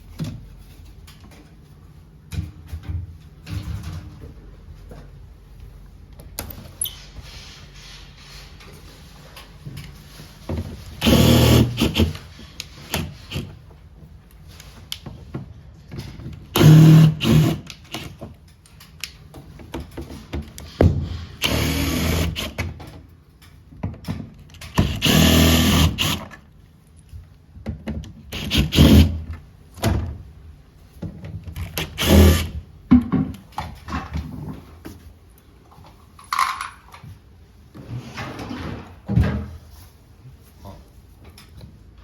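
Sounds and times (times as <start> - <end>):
cordless power driver running: 11.0 - 12.2, 16.6 - 17.7, 21.4 - 22.6, 24.8 - 26.3, 31.8 - 32.5.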